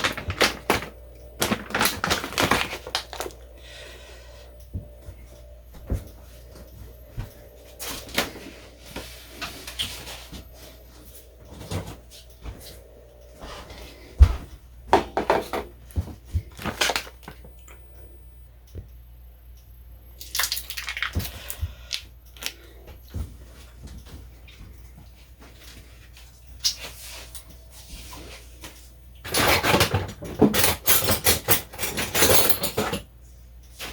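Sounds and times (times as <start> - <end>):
kitchen items knocking and clattering: 0.0 - 3.4, 14.2 - 17.5, 29.2 - 33.1
faint steady hum: 0.0 - 33.9.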